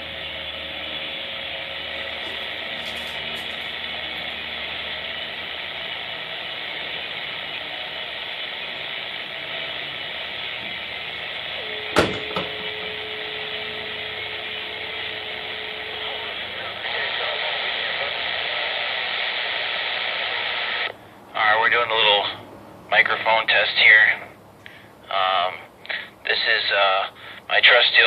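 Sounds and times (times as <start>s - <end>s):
steady radio whistle: 0.0s - 21.0s
radio static hiss: 0.0s - 24.4s, 25.1s - 28.0s.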